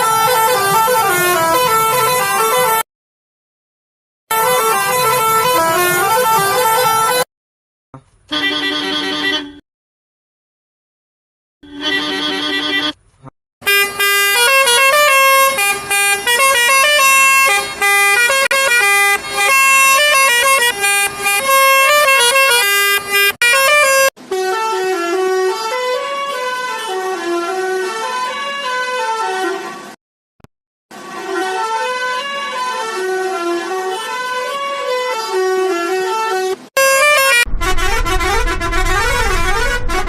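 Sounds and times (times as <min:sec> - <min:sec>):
musical vehicle horn playing tunes: 0:00.0 - 0:02.9, 0:04.3 - 0:07.3, 0:08.2 - 0:09.6, 0:11.6 - 0:13.0, 0:13.6 - 0:29.9, 0:30.9 - 0:40.0.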